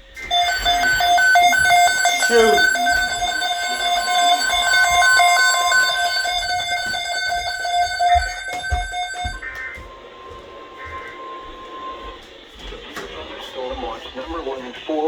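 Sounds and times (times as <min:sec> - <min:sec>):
pulsing electronic alarm tones: 0:00.0 - 0:12.3
steady single alert tone: 0:00.2 - 0:09.4.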